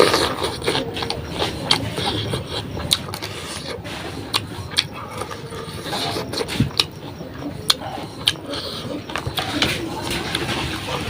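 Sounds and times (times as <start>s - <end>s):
person chewing food: 0.0s - 11.0s
rubbing scraping noise: 9.3s - 11.0s.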